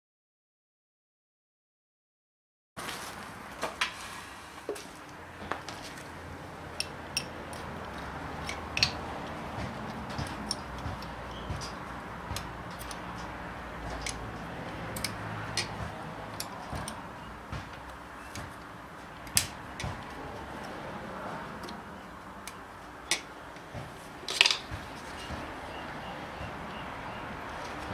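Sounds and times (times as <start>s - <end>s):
metallic clicks and taps: 6.7s - 20.8s, 21.6s - 21.8s, 22.4s - 25.4s.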